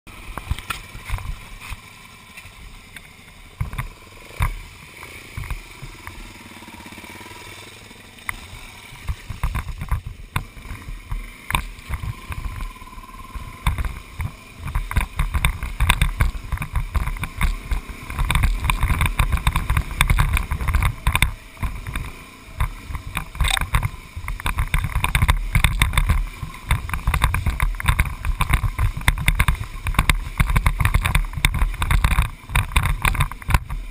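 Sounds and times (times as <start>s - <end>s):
vehicle rumbling on dirt road: 0.1s - 33.9s
knocks and rattles: 8.9s - 33.9s.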